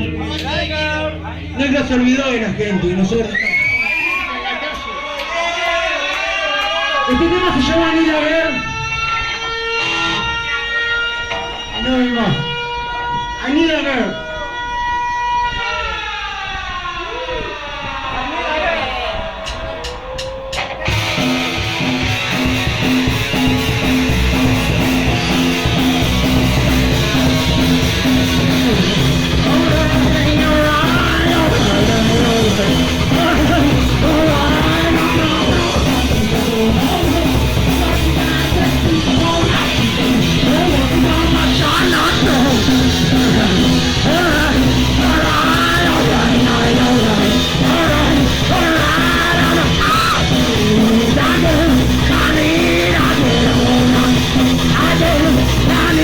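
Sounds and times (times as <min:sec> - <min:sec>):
punk rock band playing: 0:00.0 - 0:05.7, 0:06.6 - 0:15.4, 0:19.1 - 0:56.0
shouted vocal: 0:23.4 - 0:56.0.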